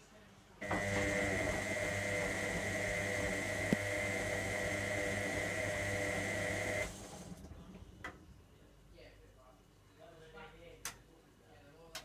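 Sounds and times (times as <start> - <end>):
washing machine humming and whining: 0.6 - 7.8.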